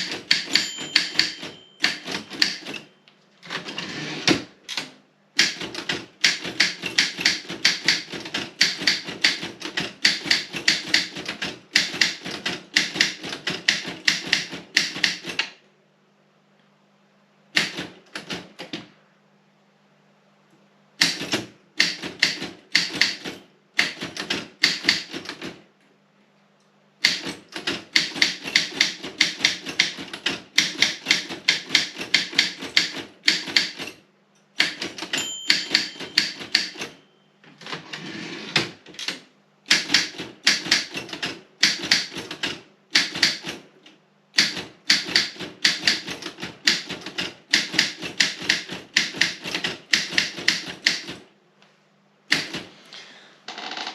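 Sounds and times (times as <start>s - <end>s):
typewriter margin bell: 0.0s - 3.0s, 34.6s - 37.3s
manual typewriter typing: 0.0s - 15.5s, 17.6s - 18.8s, 21.0s - 25.6s, 27.0s - 34.0s, 34.6s - 37.0s, 37.6s - 43.7s, 44.4s - 51.3s, 52.3s - 52.7s
typewriter carriage return: 0.0s - 15.5s, 21.0s - 25.6s, 27.0s - 34.0s, 34.6s - 43.6s, 44.4s - 51.2s, 52.3s - 52.7s.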